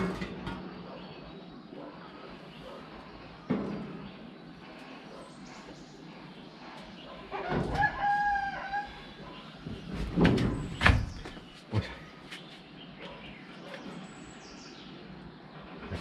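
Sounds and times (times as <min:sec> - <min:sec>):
rooster crowing: 0:07.3 - 0:09.2.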